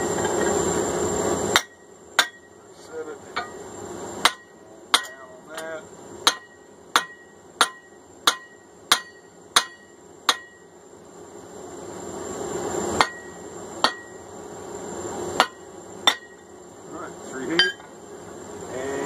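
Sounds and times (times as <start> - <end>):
hammer striking steel on anvil: 1.5 - 2.6, 4.2 - 10.7, 13.0 - 14.2, 15.4 - 16.5, 17.5 - 17.9.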